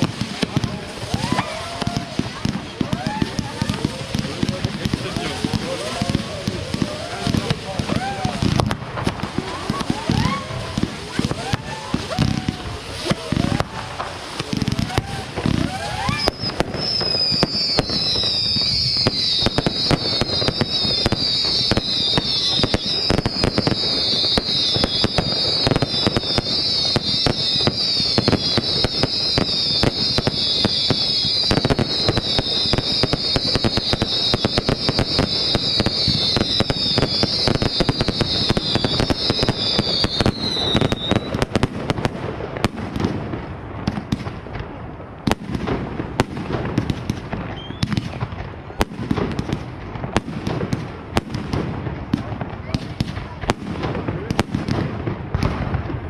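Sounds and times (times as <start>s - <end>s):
firework whistles: 0.0s - 41.7s, 47.4s - 48.2s
fireworks bangs and crackling: 0.0s - 56.0s.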